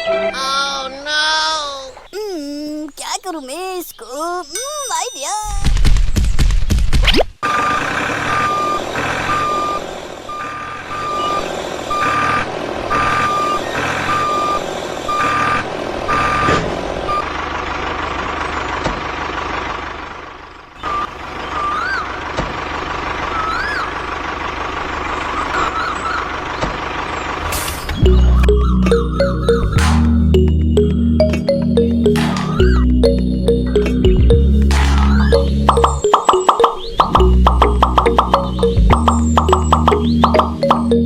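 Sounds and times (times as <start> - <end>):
engine running: 7.4 - 41.0
vehicle reversing alarm beeping: 7.5 - 17.5, 20.8 - 41.0.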